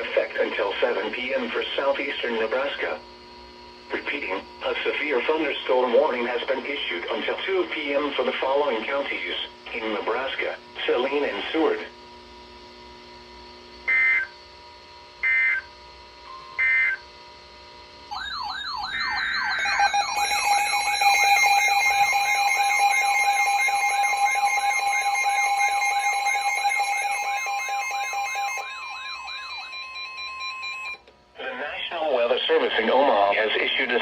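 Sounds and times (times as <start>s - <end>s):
steady attention tone: 17.9s - 32.7s
warbling siren-like alert tone: 18.1s - 31.0s
data-burst screeches: 18.8s - 27.8s.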